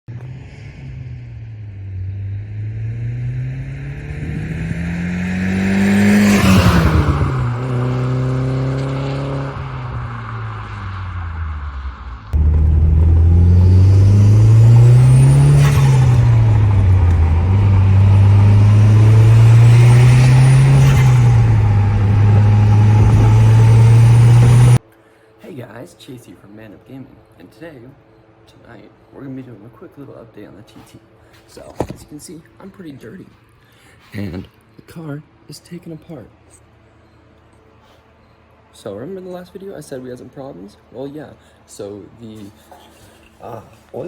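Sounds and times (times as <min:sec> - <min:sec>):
car engine revving: 0:00.1 - 0:24.8.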